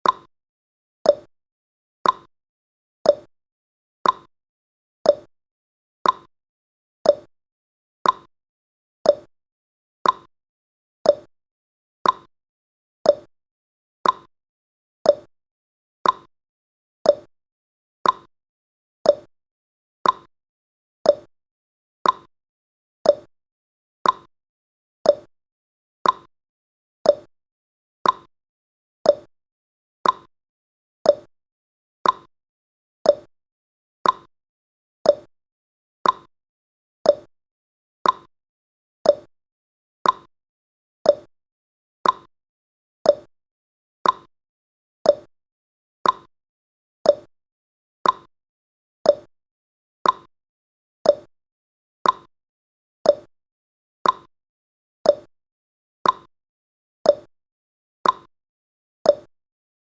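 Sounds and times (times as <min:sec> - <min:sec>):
timer ticking: 0:00.0 - 0:00.3, 0:01.1 - 0:01.3, 0:02.0 - 0:02.3, 0:03.1 - 0:03.3, 0:04.0 - 0:04.3, 0:05.1 - 0:05.3, 0:06.0 - 0:06.3, 0:07.1 - 0:07.3, 0:08.0 - 0:08.3, 0:09.1 - 0:09.3, 0:10.0 - 0:10.3, 0:11.1 - 0:11.3, 0:12.0 - 0:12.3, 0:13.1 - 0:13.3, 0:14.0 - 0:14.3, 0:15.1 - 0:15.3, 0:16.0 - 0:16.3, 0:17.1 - 0:17.3, 0:18.0 - 0:18.3, 0:19.1 - 0:19.3, 0:20.0 - 0:20.3, 0:21.1 - 0:21.3, 0:22.0 - 0:22.3, 0:23.0 - 0:23.3, 0:24.0 - 0:24.3, 0:25.1 - 0:25.3, 0:26.0 - 0:26.3, 0:27.1 - 0:27.3, 0:28.0 - 0:28.3, 0:29.1 - 0:29.3, 0:30.0 - 0:30.3, 0:31.1 - 0:31.3, 0:32.0 - 0:32.3, 0:33.1 - 0:33.3, 0:34.0 - 0:34.3, 0:35.1 - 0:35.3, 0:36.0 - 0:36.3, 0:37.1 - 0:37.3, 0:38.0 - 0:38.3, 0:39.0 - 0:39.3, 0:40.0 - 0:40.3, 0:41.1 - 0:41.3, 0:42.0 - 0:42.3, 0:43.1 - 0:43.3, 0:44.0 - 0:44.3, 0:45.1 - 0:45.3, 0:46.0 - 0:46.3, 0:47.1 - 0:47.3, 0:48.0 - 0:48.3, 0:49.1 - 0:49.3, 0:50.0 - 0:50.3, 0:51.1 - 0:51.3, 0:52.0 - 0:52.3, 0:53.1 - 0:53.3, 0:54.0 - 0:54.3, 0:55.1 - 0:55.3, 0:56.0 - 0:56.3, 0:57.1 - 0:57.3, 0:58.0 - 0:58.3, 0:59.1 - 0:59.3.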